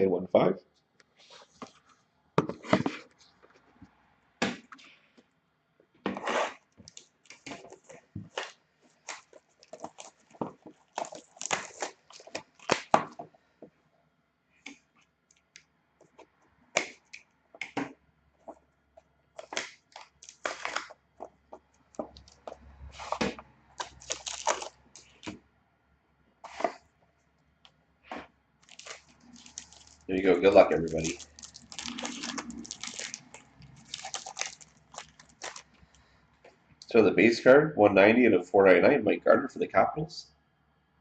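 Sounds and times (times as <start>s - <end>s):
cardboard and plastic crackling: 6.1s - 13.4s, 19.3s - 25.4s, 28.6s - 36.0s.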